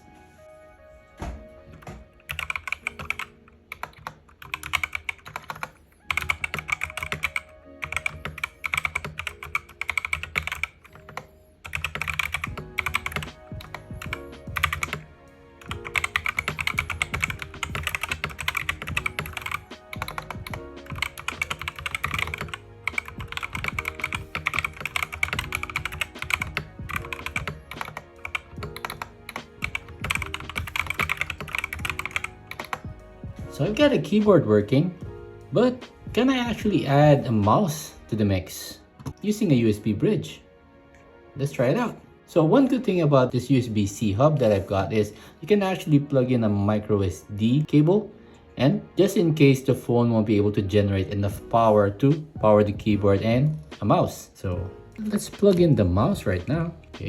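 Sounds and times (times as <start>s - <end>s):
background music: 0.0s - 57.0s
fast typing on mechanical keyboard: 2.3s - 15.0s, 15.6s - 32.9s.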